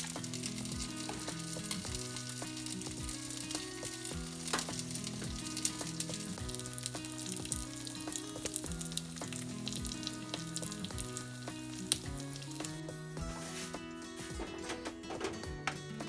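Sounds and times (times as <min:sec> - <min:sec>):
dumplings sizzling in a pan: 0:00.0 - 0:12.8
quiet background tune: 0:00.0 - 0:16.0.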